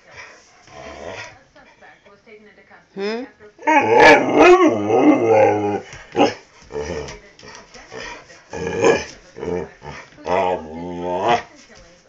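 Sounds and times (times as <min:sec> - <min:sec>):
dog wavering vocalisations: 0:03.6 - 0:07.2, 0:08.0 - 0:11.5.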